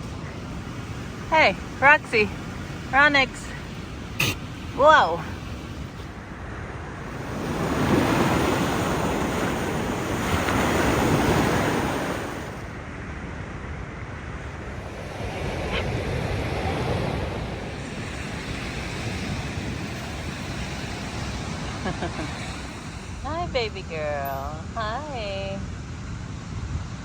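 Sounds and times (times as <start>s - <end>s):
ocean surf breaking: 0.0s - 27.0s
wind rumbling on microphone: 0.0s - 27.0s.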